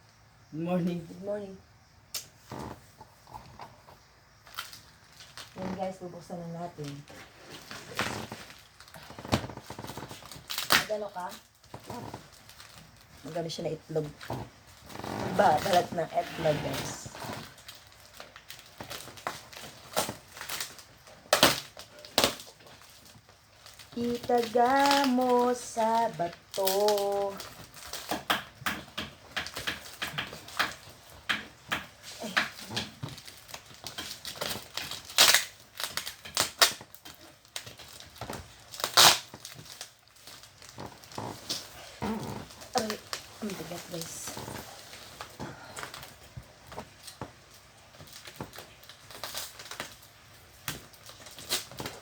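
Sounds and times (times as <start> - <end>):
packing material crinkling: 4.4 - 52.0
cardboard ripping: 6.8 - 52.0.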